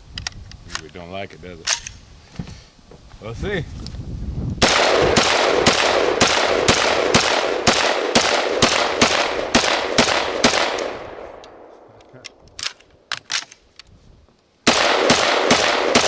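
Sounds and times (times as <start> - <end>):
rifle shots ringing out: 4.6 - 12.0, 14.7 - 16.0.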